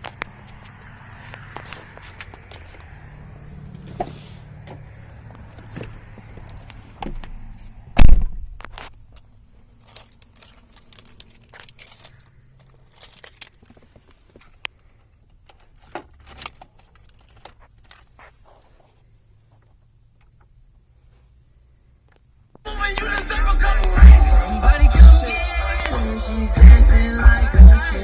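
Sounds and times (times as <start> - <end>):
keys jingling and clicking: 9.8 - 18.1.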